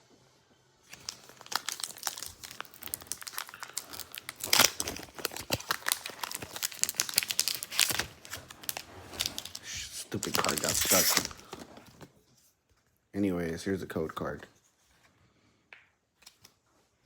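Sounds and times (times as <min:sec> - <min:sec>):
foil wrapper ripping: 0:00.9 - 0:11.7
foil wrapper crinkling: 0:00.9 - 0:12.0.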